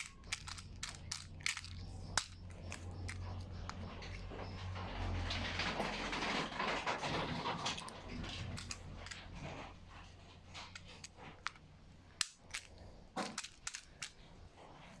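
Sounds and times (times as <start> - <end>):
wood fire crackling: 1.5 - 10.7.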